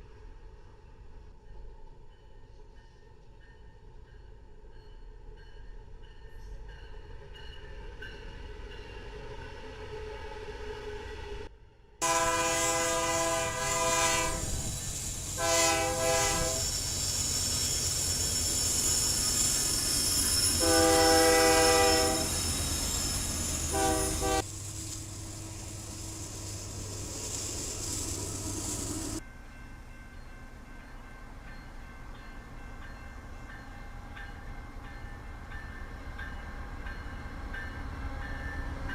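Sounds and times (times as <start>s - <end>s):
train rumble and rail noise: 0.0s - 38.9s
locomotive air horn blasts: 12.0s - 16.7s, 20.6s - 22.4s, 23.7s - 24.5s.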